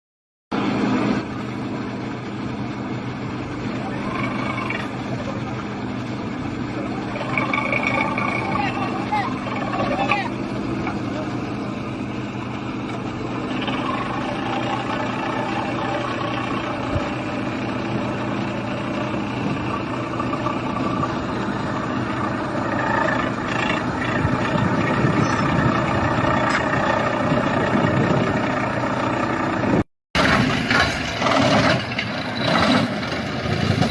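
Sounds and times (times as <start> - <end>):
excavator diesel engine running: 0.5 - 33.9.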